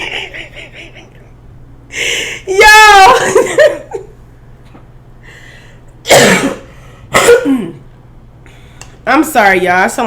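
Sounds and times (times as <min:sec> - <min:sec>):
woman coughing: 0:06.0 - 0:07.8.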